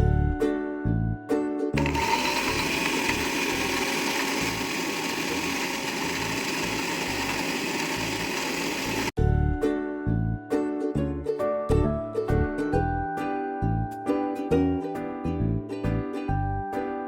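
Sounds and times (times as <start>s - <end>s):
kitchen blender running: 1.8s - 9.2s.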